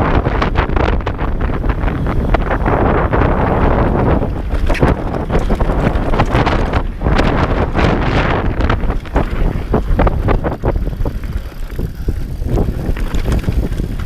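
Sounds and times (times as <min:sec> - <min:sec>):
wind buffeting microphone: 0:00.0 - 0:14.0
motorcycle engine running: 0:01.2 - 0:14.0
knocks and rattles: 0:04.2 - 0:14.0.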